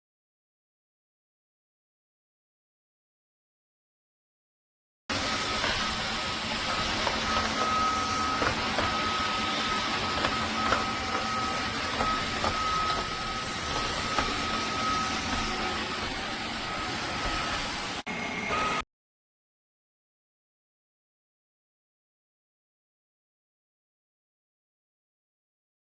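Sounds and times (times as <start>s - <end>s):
vacuum cleaner motor whine: 5.1s - 18.8s.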